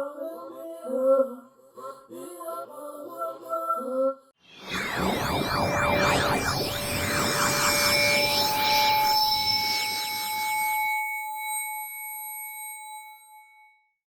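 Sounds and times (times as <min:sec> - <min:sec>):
synthesized sweeping tones: 0:04.5 - 0:11.0.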